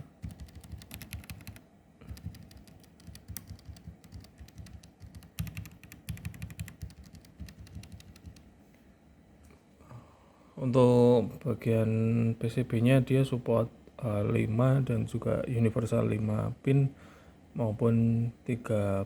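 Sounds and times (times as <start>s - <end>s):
mechanical keyboard typing: 0.2s - 8.5s.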